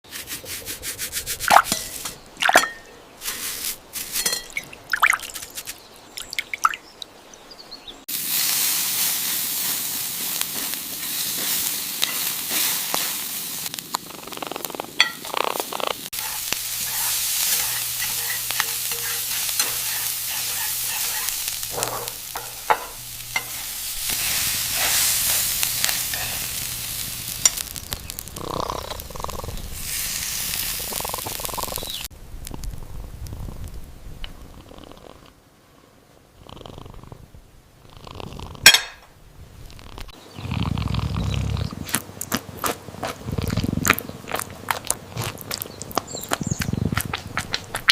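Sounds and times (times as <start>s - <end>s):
food sizzling in a pan: 1.2s - 4.5s, 8.1s - 14.0s, 15.0s - 32.1s
stirring and clattering: 1.4s - 3.4s, 4.0s - 5.7s, 16.2s - 26.5s.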